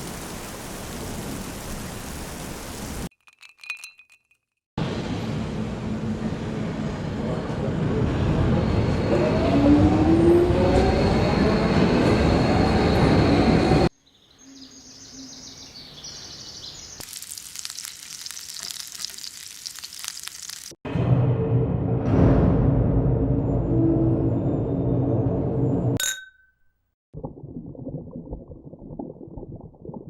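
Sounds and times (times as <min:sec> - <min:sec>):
loud rumbling noise with rising tone: 0:04.8 - 0:13.9.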